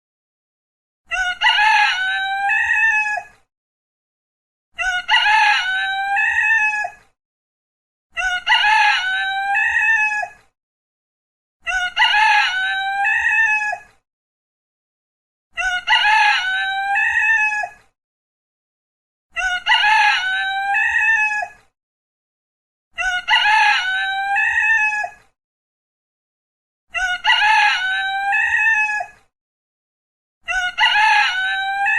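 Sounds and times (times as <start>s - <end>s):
rooster crowing: 1.2s - 3.2s, 4.8s - 6.9s, 8.2s - 10.2s, 11.8s - 13.9s, 15.6s - 17.8s, 19.4s - 21.6s, 23.0s - 25.2s, 27.0s - 29.1s, 30.6s - 31.9s.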